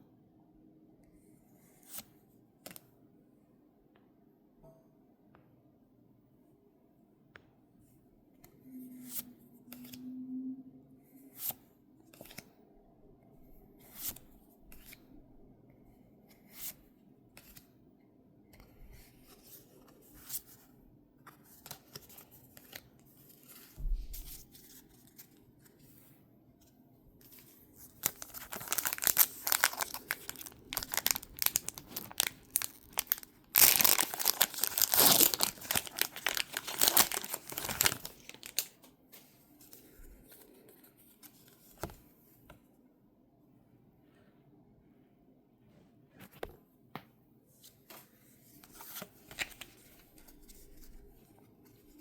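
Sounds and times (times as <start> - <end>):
foil wrapper crinkling: 28.0 - 38.8
foil pack being torn open: 28.1 - 38.7.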